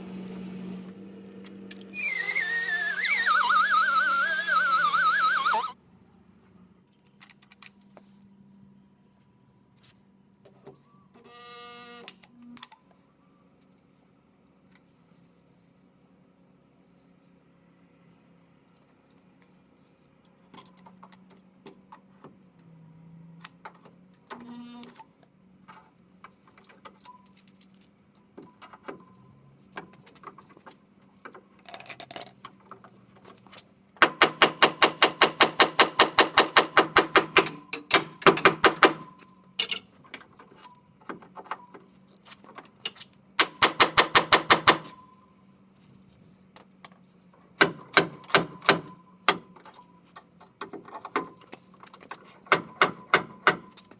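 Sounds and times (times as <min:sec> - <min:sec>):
ratchet wrench clicking: 0:02.0 - 0:05.8.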